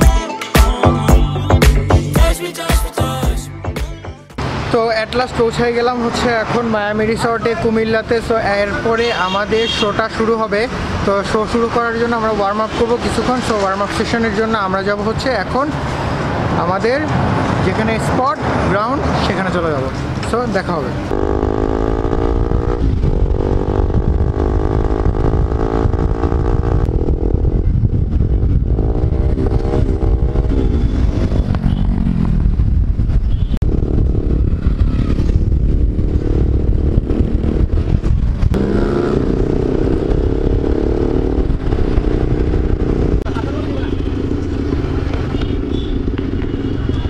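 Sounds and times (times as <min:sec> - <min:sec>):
motorcycle engine running: 0:20.8 - 0:47.0.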